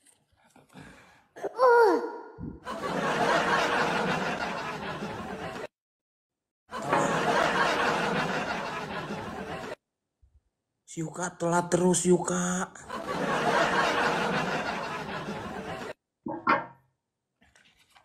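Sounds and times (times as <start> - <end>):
canned audience laughter: 2.6 - 5.7, 6.7 - 9.8, 12.8 - 16.0.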